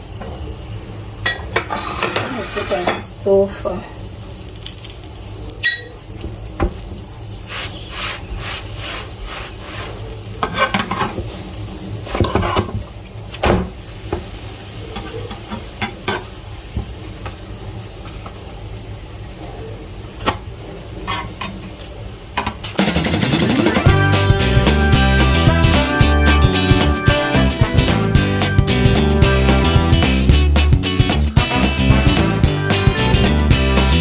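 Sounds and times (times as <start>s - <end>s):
flatbread sizzling in a pan: 4.0s - 21.7s.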